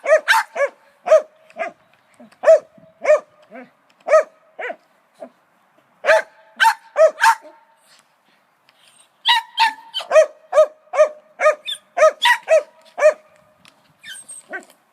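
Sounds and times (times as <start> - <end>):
dogs barking: 0.0 - 1.8, 2.4 - 4.8, 6.0 - 7.6, 9.3 - 13.2.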